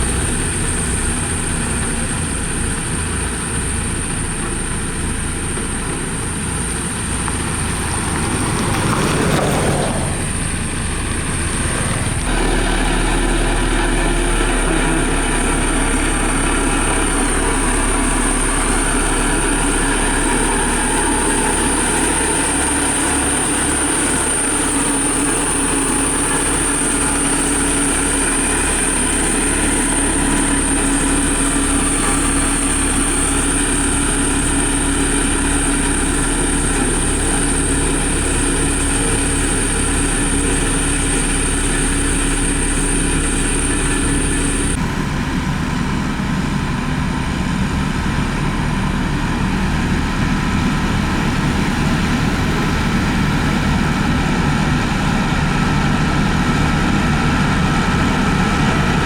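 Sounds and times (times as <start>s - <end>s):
heavy machine engine running: 0.0s - 59.0s
high-pitched whine: 9.9s - 45.4s.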